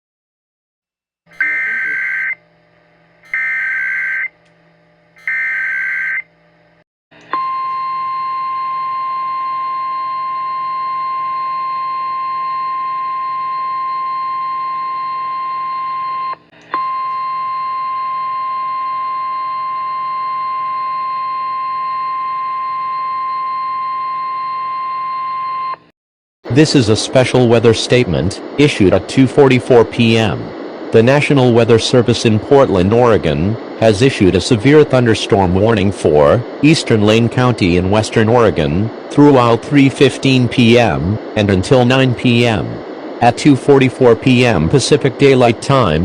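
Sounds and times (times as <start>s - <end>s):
steady warning alarm tone: 1.3s - 4.5s, 5.1s - 6.7s, 27.2s - 46.0s
raspy warbling digital data bursts: 1.4s - 2.4s.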